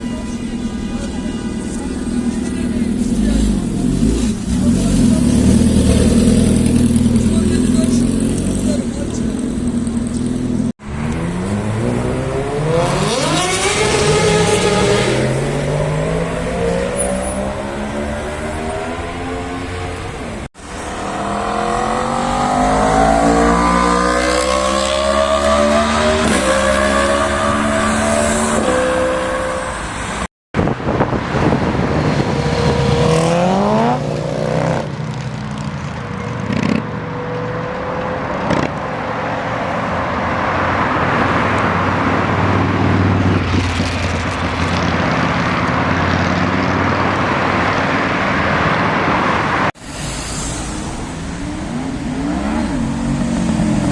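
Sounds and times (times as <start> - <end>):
motorcycles accelerating hard: 2.5 - 20.5, 21.1 - 29.8, 31.0 - 35.6
motorcycle revving sharply: 10.9 - 20.4, 21.1 - 29.8, 31.9 - 35.0.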